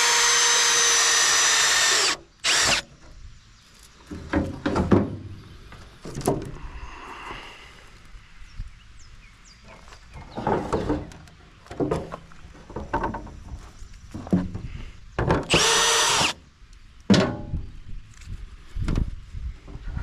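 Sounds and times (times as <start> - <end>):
power drill spinning up: 0.0 - 2.9, 15.5 - 16.4.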